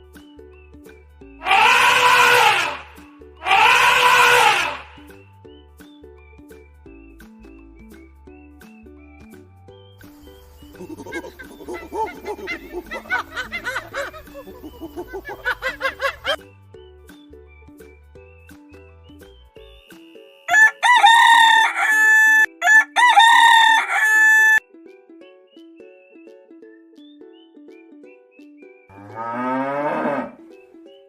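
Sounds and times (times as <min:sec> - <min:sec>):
light background music: 0:00.0 - 0:31.0
rooster crowing: 0:01.4 - 0:05.0, 0:20.5 - 0:24.6.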